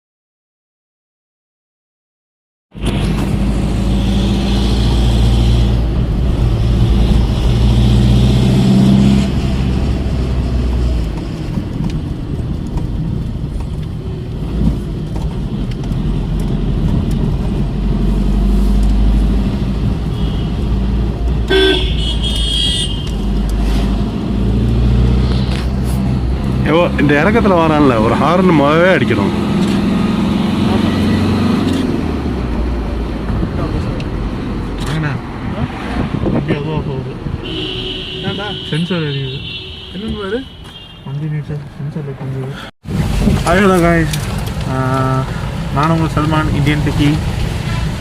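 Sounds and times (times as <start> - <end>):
car engine and road noise: 2.7 - 48.0
vehicle horn: 20.1 - 20.7, 21.4 - 23.3, 37.4 - 41.2.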